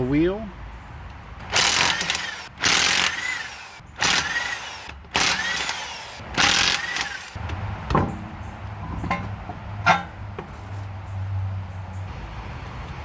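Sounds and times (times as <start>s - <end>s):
impact wrench whirring: 1.5s - 7.4s
sharp metallic knocks: 7.8s - 10.5s.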